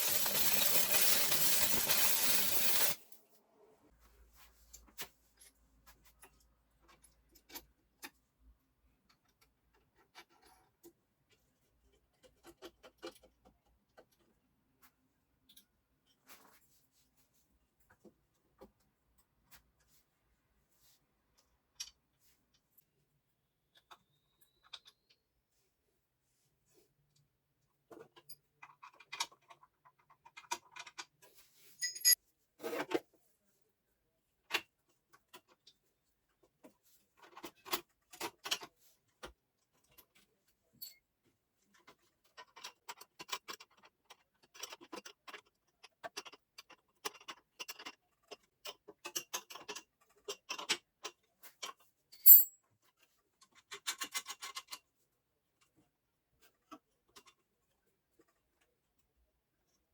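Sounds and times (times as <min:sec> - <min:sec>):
metal parts and tools clinking: 0:00.0 - 0:03.0, 0:31.8 - 0:32.2, 0:52.2 - 0:52.6
sharp metallic clink: 0:31.8 - 0:32.2, 0:52.2 - 0:52.6.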